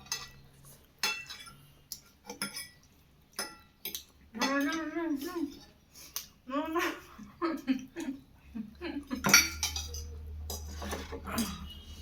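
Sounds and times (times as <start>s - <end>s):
cutlery clinking against plates: 0.0s - 5.7s, 9.2s - 11.7s.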